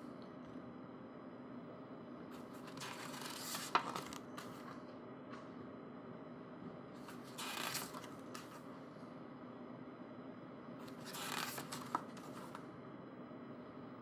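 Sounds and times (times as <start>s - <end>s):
paper pages rustling: 2.4s - 4.8s, 7.0s - 8.6s, 10.8s - 12.6s.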